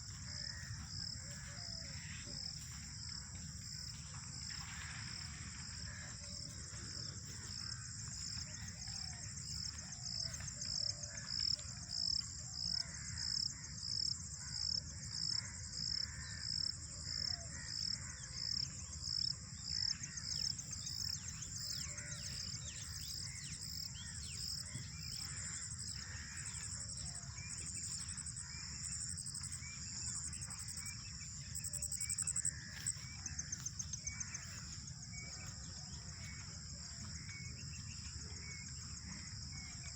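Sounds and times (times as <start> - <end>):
birds chirping: 20.4 - 39.9.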